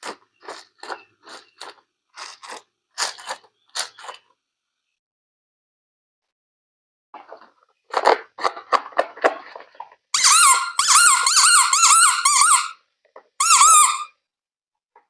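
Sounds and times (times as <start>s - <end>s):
wavering toy squeak: 10.2s - 12.8s, 13.4s - 14.1s.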